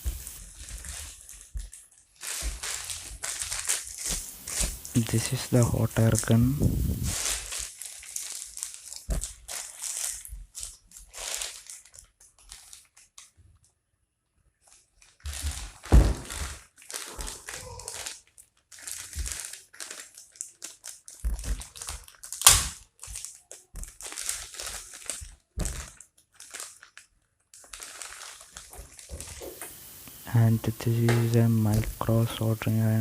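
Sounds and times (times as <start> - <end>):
plastic packaging crinkling: 0.0 - 13.4, 14.6 - 33.0
heavy thump: 15.9 - 16.4.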